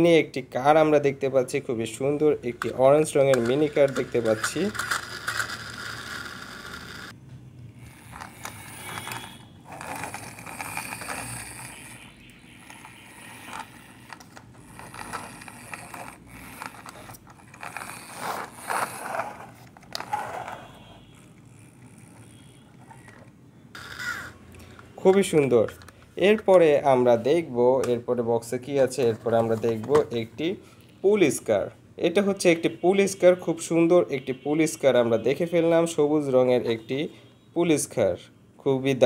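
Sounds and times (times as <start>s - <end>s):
toy car wheels clicking and scraping: 2.6s - 7.2s, 7.8s - 24.4s.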